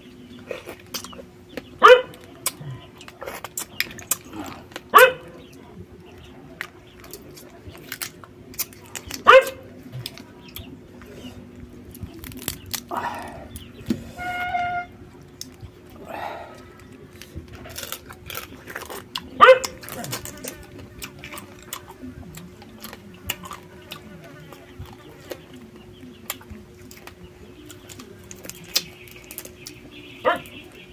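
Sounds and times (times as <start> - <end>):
dog barking: 1.8 - 2.3, 4.9 - 5.4, 9.2 - 9.7, 19.4 - 19.9, 30.2 - 30.6
dog eating crunchy food clicks: 16.9 - 30.6.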